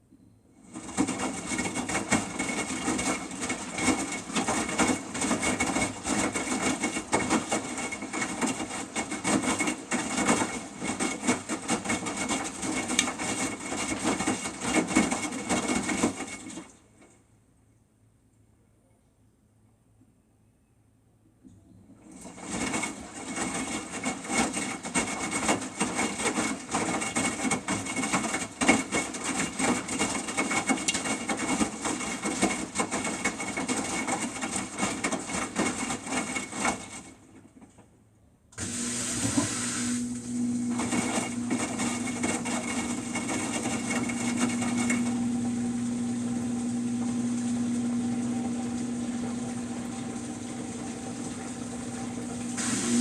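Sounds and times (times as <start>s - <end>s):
washing machine motor hum: 0.6s - 17.2s, 21.7s - 37.6s, 38.6s - 53.0s
washing machine drum rattling: 40.7s - 46.3s.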